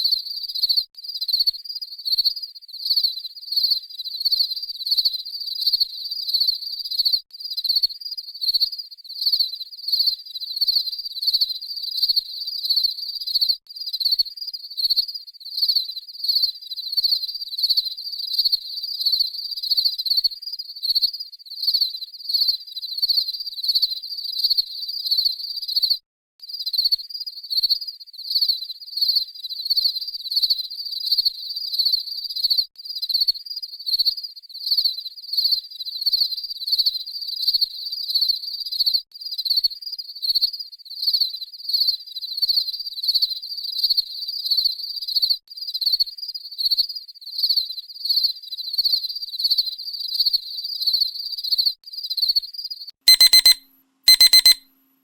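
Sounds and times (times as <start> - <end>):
electronic alarm beeping: 53.1 - 54.6.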